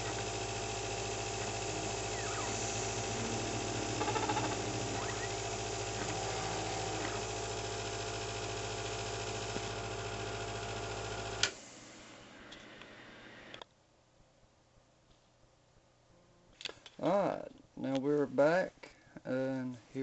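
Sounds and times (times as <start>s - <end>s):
laser engraver humming and whining: 0.0s - 12.4s.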